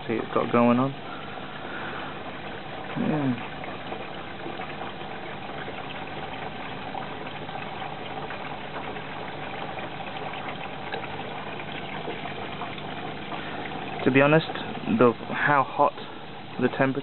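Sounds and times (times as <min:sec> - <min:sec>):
faint hum: 0:00.0 - 0:17.0
water rushing into washing machine: 0:00.0 - 0:17.0.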